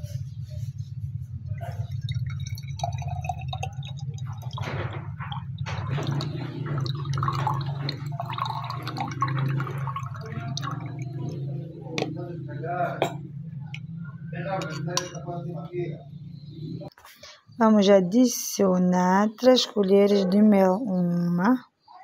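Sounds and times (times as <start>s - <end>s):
steady low hum: 0.0s - 17.8s
water trickling and dripping: 1.8s - 12.2s.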